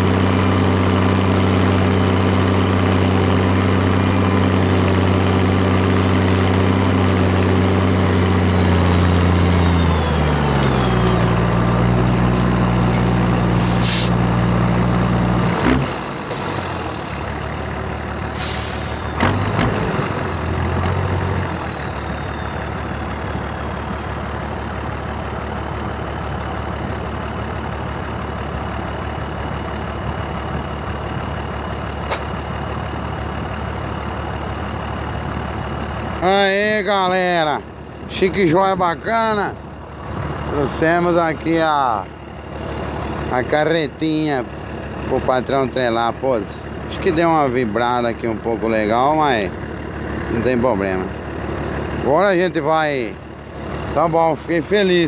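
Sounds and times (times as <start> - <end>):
tractor diesel engine: 0.0 - 55.0
air hisses: 12.9 - 14.2.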